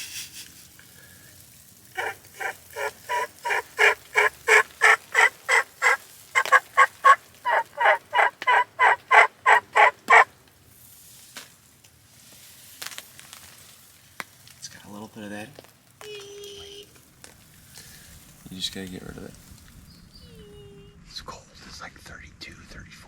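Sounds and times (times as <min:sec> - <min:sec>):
turkey yelping: 0:02.0 - 0:10.3.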